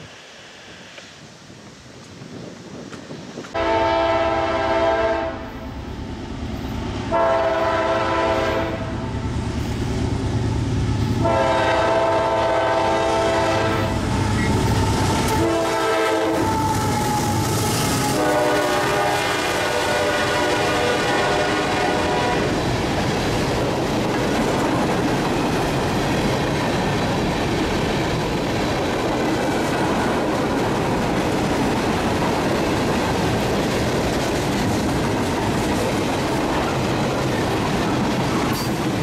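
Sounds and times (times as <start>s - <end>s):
train rumbling: 0.0s - 39.0s
locomotive air horn blasts: 3.6s - 5.6s, 7.1s - 9.0s, 11.2s - 22.6s.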